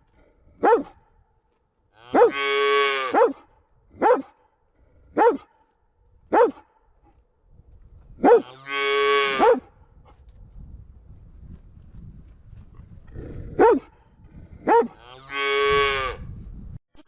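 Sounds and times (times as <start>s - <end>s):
calf mooing: 15.0s - 16.2s.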